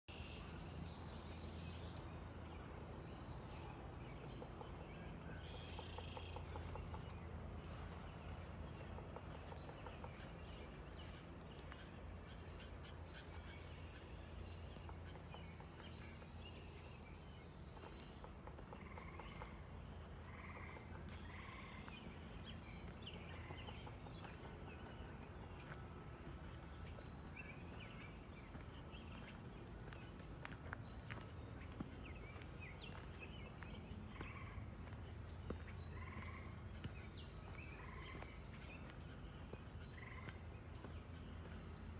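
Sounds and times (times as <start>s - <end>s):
bird calls and chirps: 0.1s - 41.9s
steady low hum: 0.1s - 41.9s.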